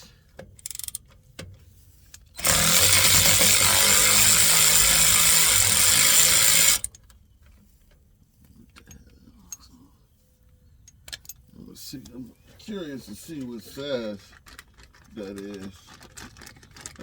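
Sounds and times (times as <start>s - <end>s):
impact wrench running: 0.6s - 1.0s, 2.4s - 6.9s.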